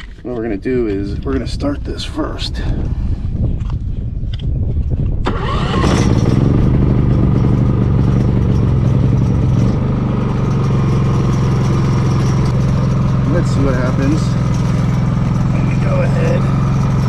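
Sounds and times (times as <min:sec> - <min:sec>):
generator engine droning: 0:05.2 - 0:17.0.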